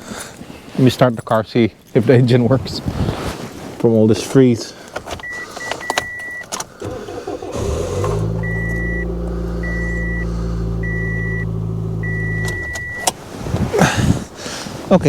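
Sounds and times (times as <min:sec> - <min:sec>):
dashboard warning chime beeping: 0:05.2 - 0:13.1
car engine starting and idling: 0:06.1 - 0:13.4.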